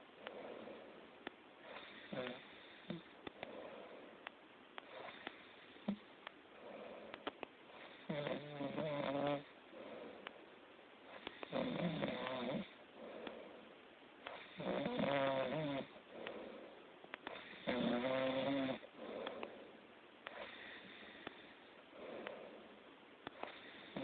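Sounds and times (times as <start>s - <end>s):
soft breathing: 0.0s - 24.0s
person snoring loudly: 8.1s - 9.5s, 11.5s - 12.7s, 14.6s - 15.9s, 17.4s - 18.9s.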